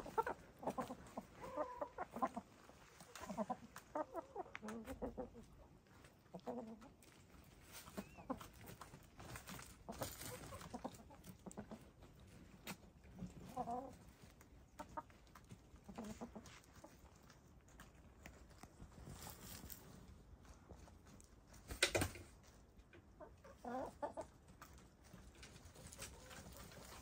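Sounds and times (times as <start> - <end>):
hens clucking quietly: 0.0 - 27.0
dirt scratching and rustling: 16.0 - 21.7.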